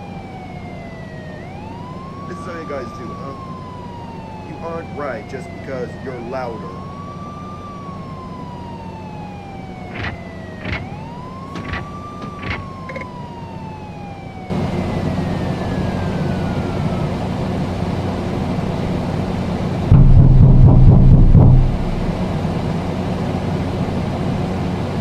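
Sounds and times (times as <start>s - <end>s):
wailing siren: 0.0s - 25.0s
sharp clicks: 9.9s - 11.0s
rushing noise with low hum: 14.5s - 25.0s.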